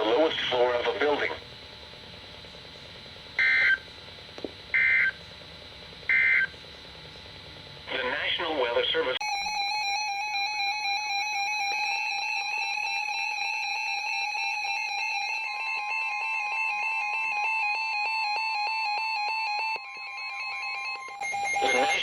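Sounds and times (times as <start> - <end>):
electronic alert tone: 9.2 - 22.0.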